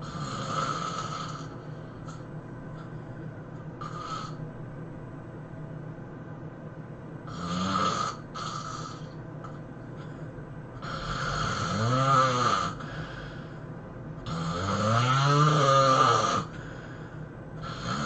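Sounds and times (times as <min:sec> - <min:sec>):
person snoring heavily: 0:00.0 - 0:02.0, 0:03.8 - 0:04.4, 0:07.3 - 0:09.2, 0:10.8 - 0:13.6, 0:14.2 - 0:18.0.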